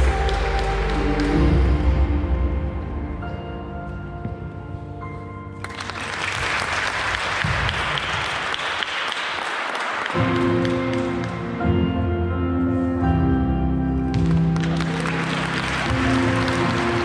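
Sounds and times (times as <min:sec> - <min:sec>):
audience clapping: 0:00.0 - 0:01.8, 0:05.6 - 0:11.6, 0:14.2 - 0:17.0
music: 0:00.0 - 0:09.2, 0:09.8 - 0:17.0.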